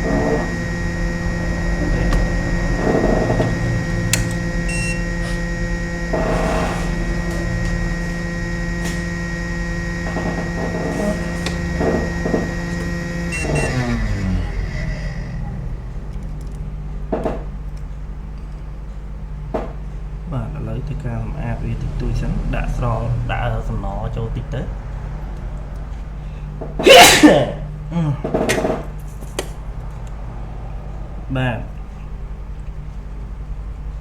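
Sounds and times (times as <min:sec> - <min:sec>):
steady machine hum: 0:00.0 - 0:34.0
clicks: 0:03.3 - 0:04.5
short rushing noises: 0:06.1 - 0:07.3.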